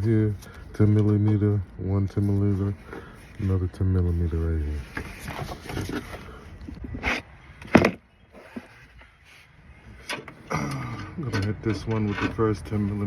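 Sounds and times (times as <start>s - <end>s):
tools and parts clattering: 4.8s - 6.4s, 10.0s - 12.8s.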